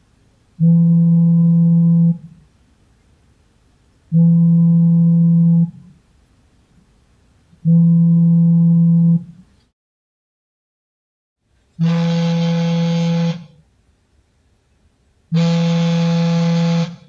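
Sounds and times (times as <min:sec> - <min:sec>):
phone vibration buzzing: 0:00.6 - 0:02.4, 0:04.1 - 0:05.9, 0:07.6 - 0:09.4, 0:11.8 - 0:13.6, 0:15.3 - 0:17.0.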